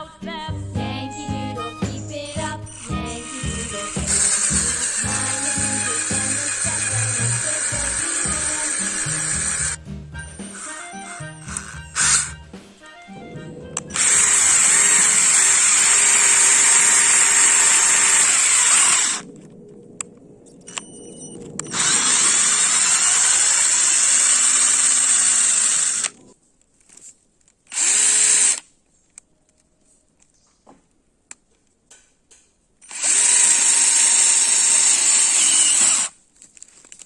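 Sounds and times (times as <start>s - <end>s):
cordless drill whining: 1.6s - 19.3s, 21.5s - 26.3s, 27.7s - 28.6s, 32.8s - 36.2s.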